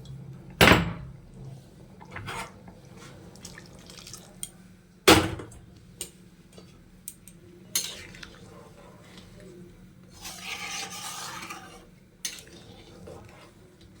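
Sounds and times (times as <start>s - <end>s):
cookware knocking: 0.6s - 1.2s.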